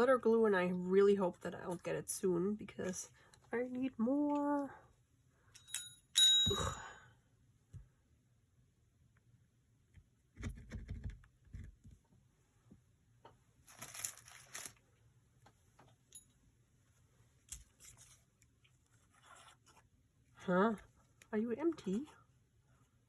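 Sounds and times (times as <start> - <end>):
paper rustle: 13.7 - 14.8.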